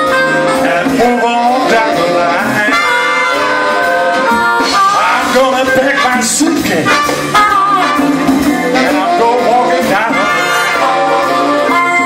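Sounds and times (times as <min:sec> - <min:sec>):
big band playing blues: 0:00.0 - 0:12.0
person singing: 0:00.0 - 0:12.0.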